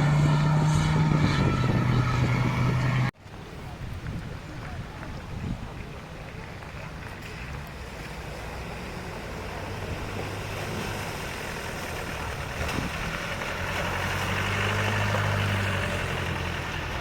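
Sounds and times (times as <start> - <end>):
vehicle engine running: 0.0 - 3.2, 7.3 - 17.0.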